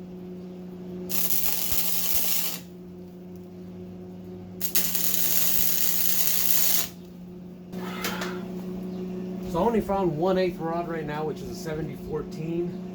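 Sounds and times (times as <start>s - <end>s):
low hum: 0.0s - 12.9s
welding arc crackling: 1.1s - 2.7s, 4.6s - 7.1s.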